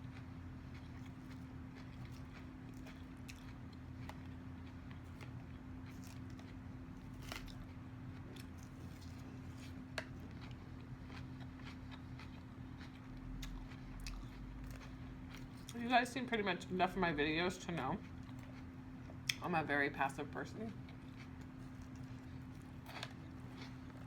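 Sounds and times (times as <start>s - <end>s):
crunchy chewing: 0.0s - 15.8s, 20.7s - 24.0s.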